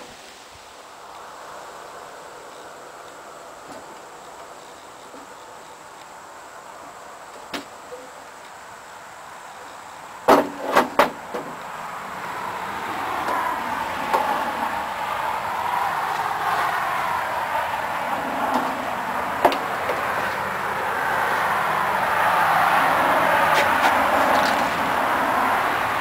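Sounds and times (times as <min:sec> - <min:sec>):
sharp knocks: 0:10.3 - 0:11.6.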